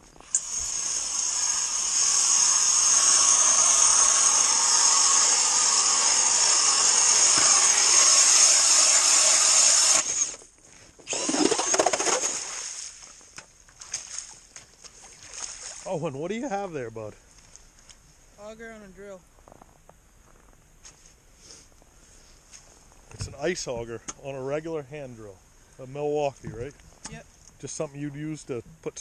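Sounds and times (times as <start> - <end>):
cordless drill boring through ice: 0.0 - 10.4, 11.0 - 12.6.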